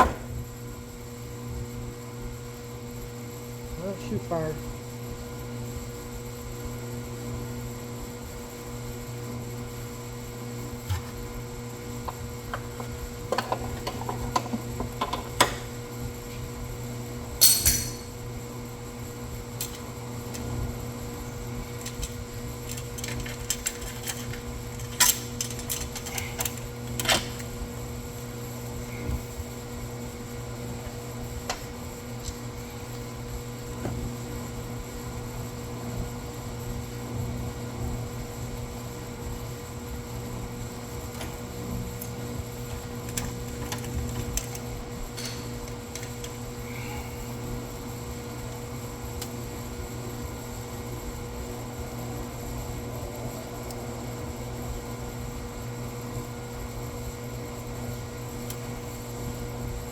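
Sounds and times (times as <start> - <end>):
steady hum: 15.7 - 59.9
hand tools clanking on metal: 17.4 - 18.1.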